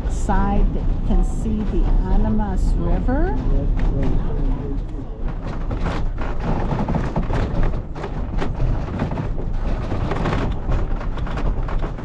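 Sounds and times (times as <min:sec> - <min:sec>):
railroad car rumbling: 0:00.0 - 0:06.4
wheels clattering on rails: 0:00.0 - 0:12.0.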